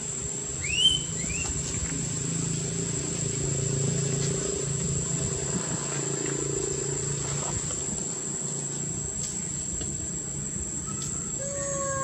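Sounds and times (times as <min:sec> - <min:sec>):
baby monkey crying: 0:11.4 - 0:12.0.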